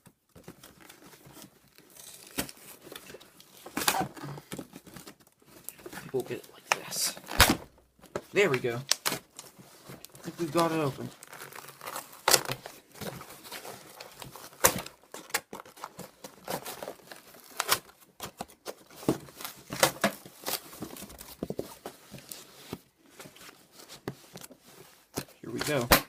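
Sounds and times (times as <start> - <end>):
cardboard box packaging crinkling: 0.3 - 25.9.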